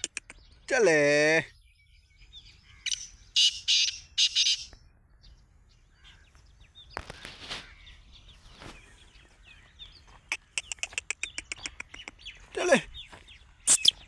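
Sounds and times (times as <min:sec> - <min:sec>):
bird giving harsh grating call: 0:00.0 - 0:01.0, 0:02.7 - 0:04.7, 0:10.3 - 0:12.8, 0:13.7 - 0:14.0
small birds chirping: 0:00.0 - 0:14.0.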